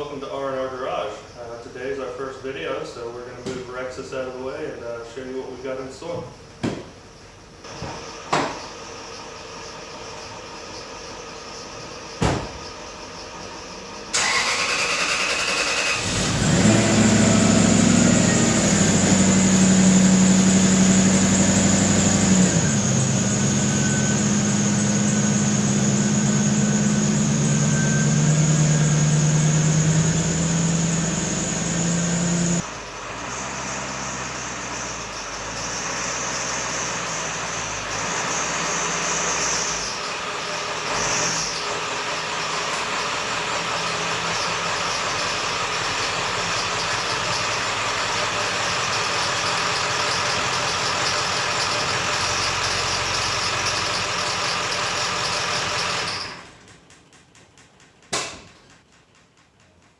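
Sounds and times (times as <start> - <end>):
engine starter cranking: 14.1 - 17.6
vehicle engine running: 15.7 - 56.0.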